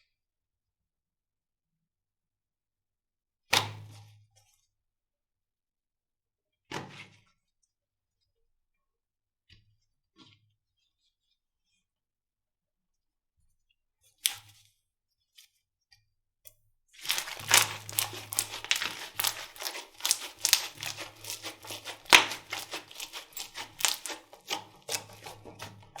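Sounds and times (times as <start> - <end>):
slime crackling and popping: 17.0 - 26.0.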